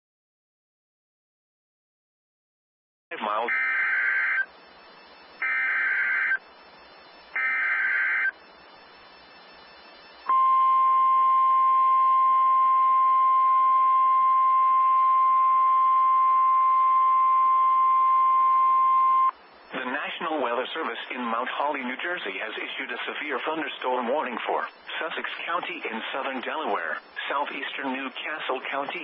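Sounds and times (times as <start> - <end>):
steady electronic alarm tone: 3.2 - 19.3.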